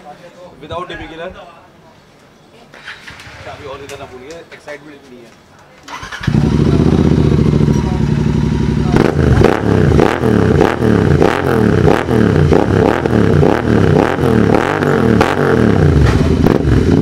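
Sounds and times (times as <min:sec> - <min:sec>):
motorcycle engine revving: 0:05.9 - 0:17.0.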